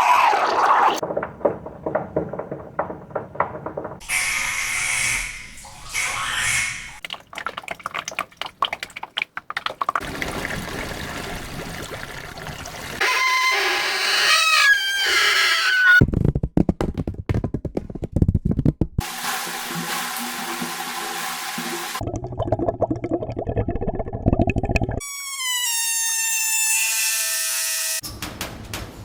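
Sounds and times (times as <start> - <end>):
rushing flow in pipe: 10.0 - 13.0.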